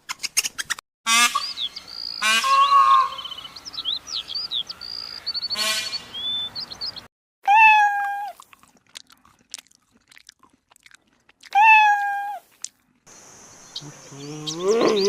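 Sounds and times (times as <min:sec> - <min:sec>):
animal chirps: 0:13.6 - 0:15.0
animal drawn-out cry: 0:13.8 - 0:15.0.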